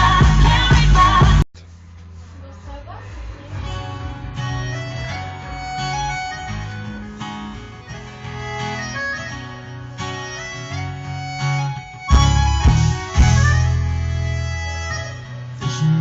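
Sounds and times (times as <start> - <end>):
heavy bass hits: 0.0 - 1.4, 12.1 - 14.2
song with harmonica and guitar: 3.9 - 16.0.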